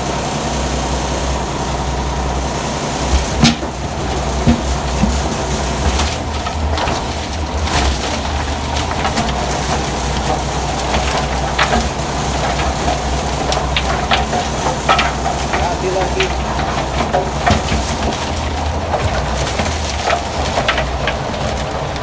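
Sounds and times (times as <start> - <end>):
crusher machine humming: 0.0 - 22.0
cracks and knocks of chopping: 3.1 - 22.0.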